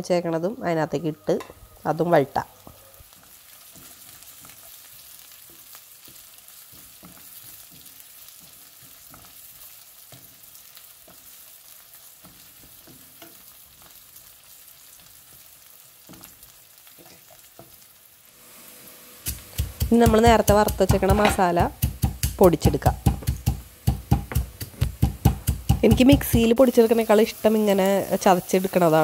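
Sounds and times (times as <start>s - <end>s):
vegetables sizzling in a pan: 0.0s - 29.0s
utensil scraping a pan: 20.8s - 21.6s.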